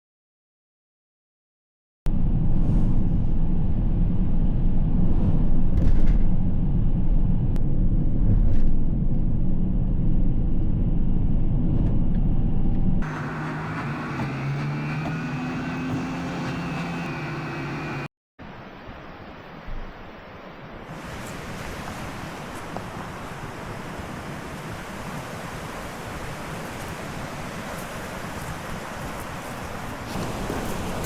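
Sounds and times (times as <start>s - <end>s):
vehicle rumbling: 2.1s - 18.1s.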